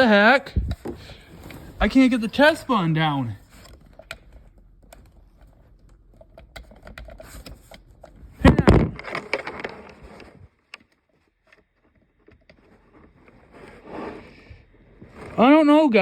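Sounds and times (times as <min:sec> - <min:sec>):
plastic clicks and scrapes: 0:03.4 - 0:15.5.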